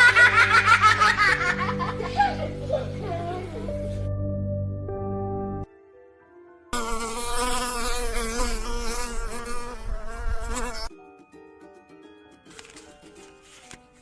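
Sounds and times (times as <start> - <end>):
soft music notes: 1.4 - 6.8, 10.9 - 14.0
insect-like buzzing: 6.8 - 10.9.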